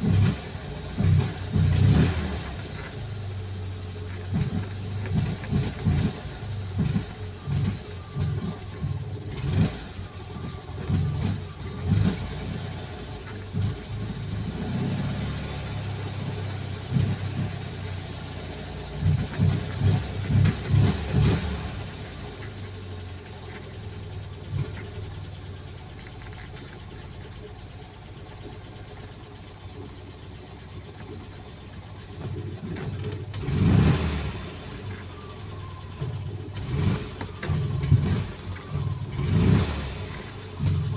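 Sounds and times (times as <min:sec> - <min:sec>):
engine sputtering and revving: 0:00.0 - 0:40.9.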